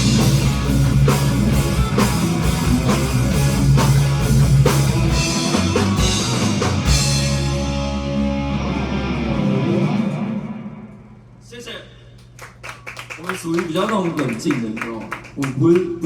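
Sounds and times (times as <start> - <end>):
live rock band playing: 0.0 - 10.6.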